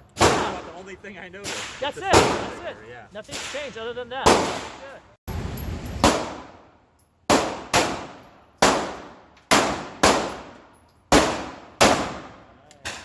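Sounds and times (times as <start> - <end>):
reverberant pistol shots: 6.0 - 6.7, 7.3 - 13.0.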